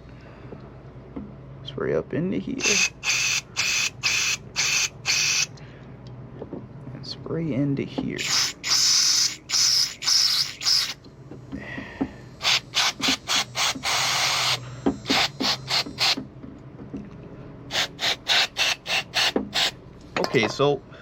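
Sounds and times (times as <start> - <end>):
short quick aerosol squirts: 2.6 - 5.5, 8.2 - 11.0, 12.4 - 16.2
aerosol spraying: 8.2 - 11.0, 12.4 - 16.2, 17.7 - 19.7.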